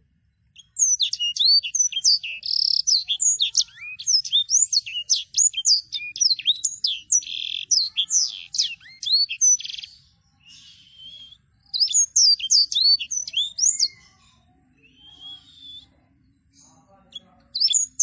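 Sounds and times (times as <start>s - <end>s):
songbird whistling and chirping: 0.4s - 18.0s.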